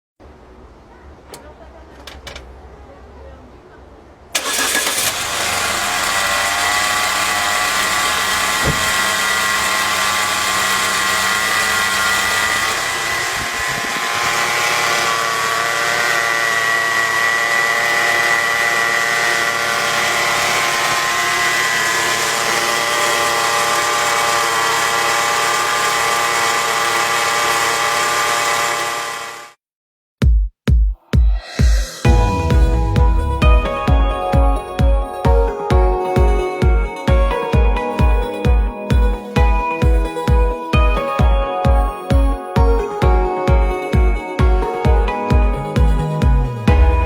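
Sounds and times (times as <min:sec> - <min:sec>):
car engine running: 0:04.4 - 0:17.6, 0:32.0 - 0:39.2, 0:44.0 - 0:47.0
high-pitched bearing whine: 0:31.3 - 0:38.3.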